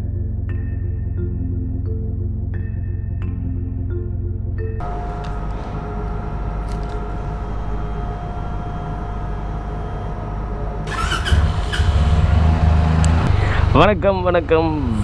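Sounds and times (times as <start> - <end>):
faint steady hum: 4.8 - 12.3
vehicle engine rumbling: 4.8 - 15.0.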